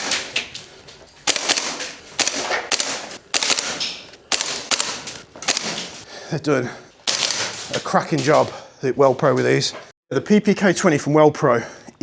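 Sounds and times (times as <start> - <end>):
airsoft rifle shots with bolt clack: 1.3 - 6.0, 7.1 - 7.7.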